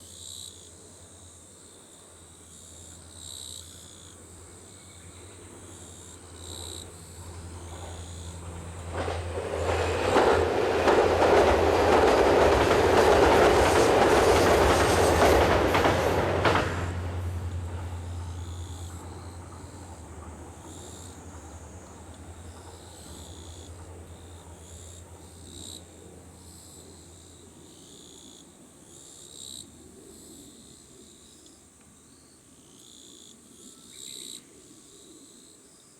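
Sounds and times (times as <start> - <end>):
insects chirping: 0.0 - 35.9
train wheels on rails: 6.2 - 27.1.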